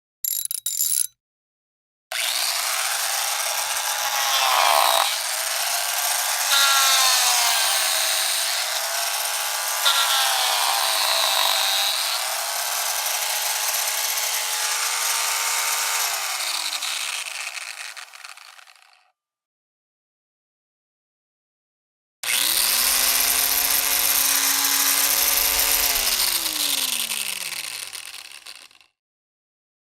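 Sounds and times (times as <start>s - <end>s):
power tool motor whining: 2.1s - 19.0s, 22.2s - 28.9s.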